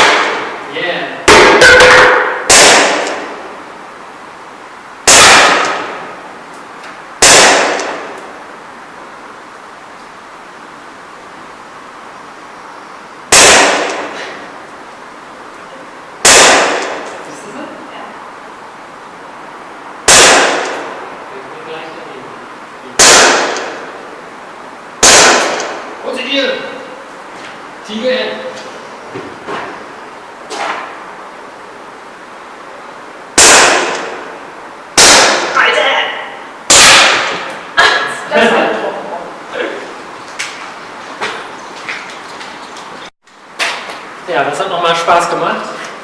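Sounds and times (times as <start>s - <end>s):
airsoft pistol shots: 0.0s - 0.6s, 1.3s - 3.4s, 5.0s - 6.1s, 7.2s - 8.2s, 13.3s - 14.2s, 16.2s - 17.2s, 20.0s - 21.0s, 23.0s - 24.0s, 25.0s - 25.9s, 33.4s - 34.4s, 35.0s - 35.6s, 36.7s - 37.5s.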